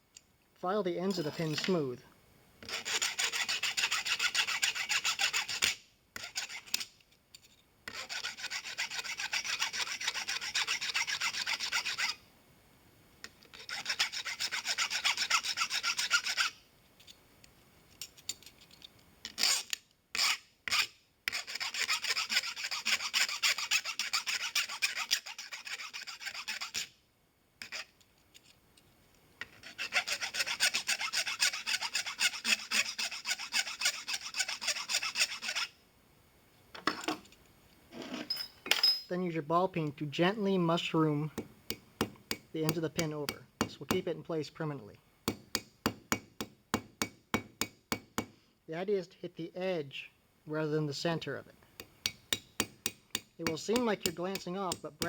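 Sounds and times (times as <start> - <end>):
file rasping on brass rod: 2.6 - 6.9, 7.9 - 12.2, 13.5 - 16.6, 19.3 - 26.9, 27.6 - 28.0, 29.4 - 35.8, 40.8 - 44.1, 51.8 - 55.0.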